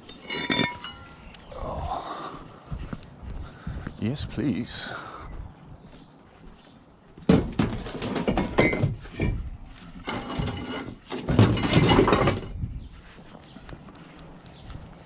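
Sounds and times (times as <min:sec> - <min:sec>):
scrap metal clanks and bangs: 0:00.0 - 0:01.3, 0:07.3 - 0:12.6
metallic ring: 0:00.1 - 0:01.2.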